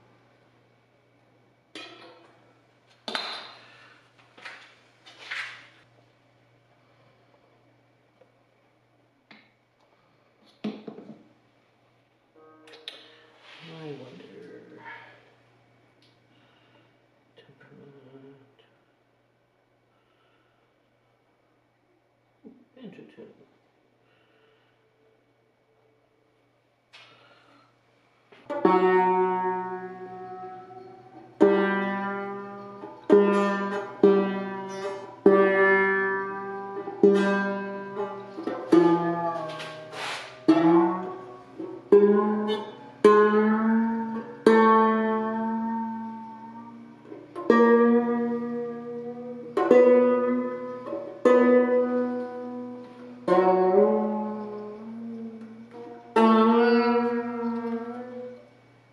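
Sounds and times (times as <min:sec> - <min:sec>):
banjo strummed chords: 0:28.5 - 0:58.4.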